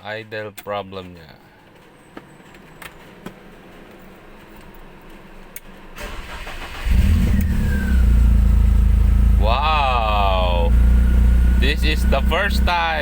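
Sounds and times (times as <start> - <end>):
car engine idling: 1.5 - 13.0
falling starter whine: 6.0 - 13.0.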